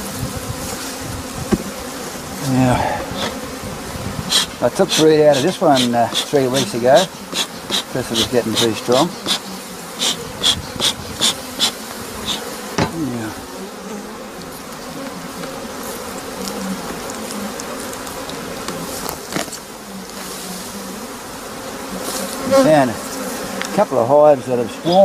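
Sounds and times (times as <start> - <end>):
bees buzzing: 0.0 - 25.0.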